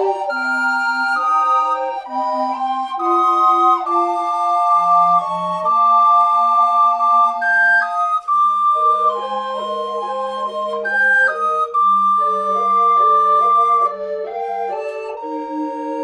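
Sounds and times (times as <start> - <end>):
flute ensemble playing: 0.0 - 16.0.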